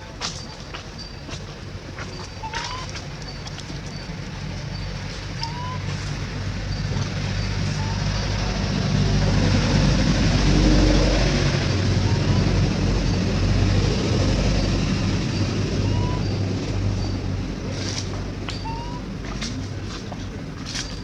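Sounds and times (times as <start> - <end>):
vehicle engine passing by: 4.1 - 20.9.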